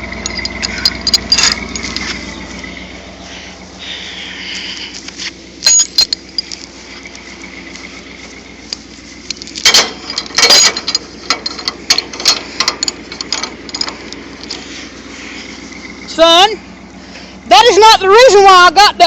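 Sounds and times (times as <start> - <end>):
metallic clanks and clinks: 0.0 - 2.8, 5.6 - 14.7
engine idling: 0.0 - 19.0.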